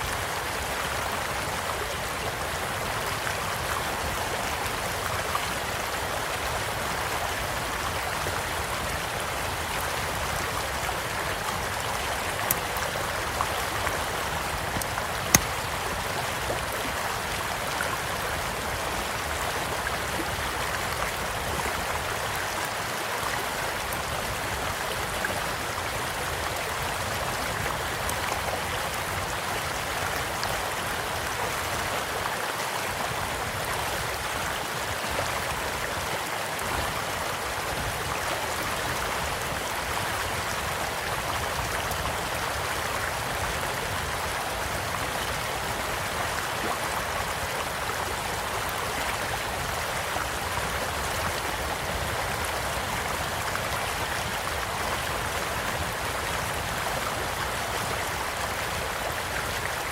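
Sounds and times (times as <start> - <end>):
small stream flowing: 0.0 - 59.9
campfire crackling pops: 14.8 - 15.7.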